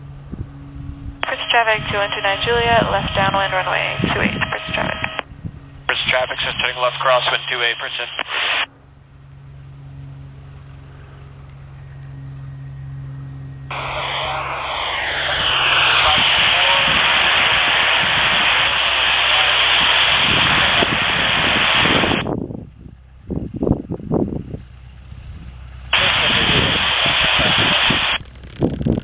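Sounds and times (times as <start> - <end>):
aircraft engine hum: 0.0 - 29.0
radio hiss: 1.2 - 5.2, 5.9 - 8.7, 13.7 - 22.3, 25.9 - 28.2.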